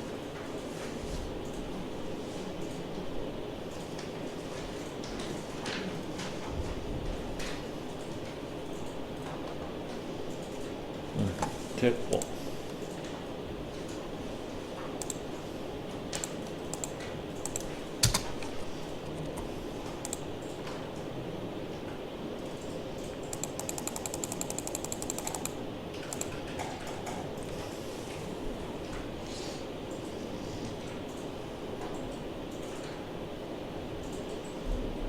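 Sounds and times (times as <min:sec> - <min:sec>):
low background hum: 0:00.0 - 0:35.0
keyboard keys clicking: 0:15.0 - 0:15.2, 0:16.1 - 0:20.6, 0:22.6 - 0:27.2.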